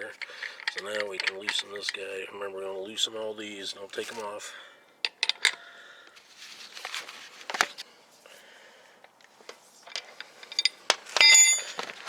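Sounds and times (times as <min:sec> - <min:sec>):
wrench clicking and scraping: 0:00.0 - 0:02.1, 0:05.0 - 0:05.6, 0:09.8 - 0:11.8.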